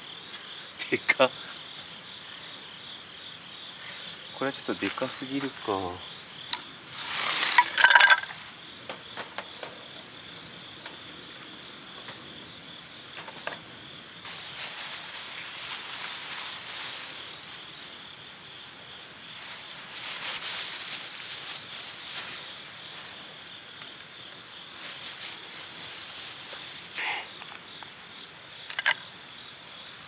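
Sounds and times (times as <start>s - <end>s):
insects trilling: 0.0s - 30.0s
rustling of things handled: 6.6s - 8.6s, 14.2s - 27.0s
loud rustle: 6.9s - 8.6s, 14.3s - 18.2s, 18.9s - 24.0s, 24.6s - 27.0s.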